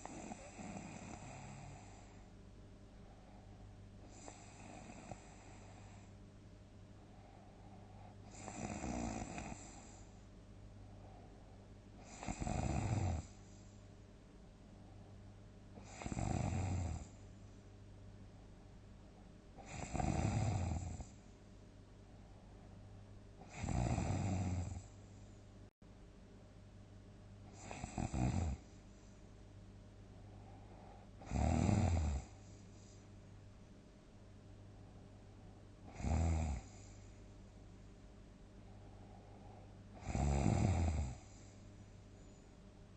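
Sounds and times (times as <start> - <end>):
person snoring loudly: 0.0 - 2.0, 8.3 - 9.9, 12.0 - 13.3, 15.8 - 17.1, 19.6 - 21.1, 23.4 - 24.8, 27.6 - 28.6, 31.2 - 32.3, 35.9 - 36.8, 40.0 - 41.2
steady low hum: 0.0 - 42.9.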